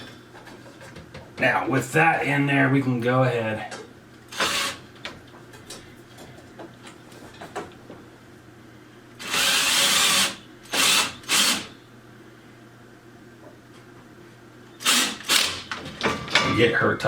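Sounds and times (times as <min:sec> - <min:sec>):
cordless drill running: 0:04.3 - 0:04.8, 0:09.2 - 0:11.7, 0:14.8 - 0:15.7.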